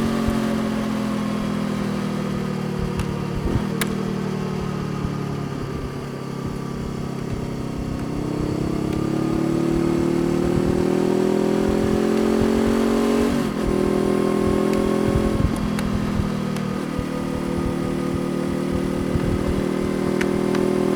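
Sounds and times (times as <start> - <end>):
motorcycle engine accelerating: 0.0 - 20.9.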